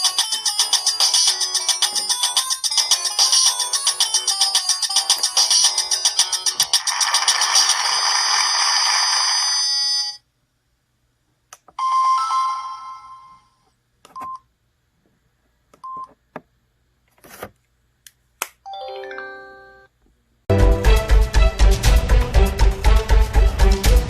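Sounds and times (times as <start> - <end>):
phone ringtone melody: 0.0 - 10.2, 11.8 - 13.5, 18.7 - 19.9.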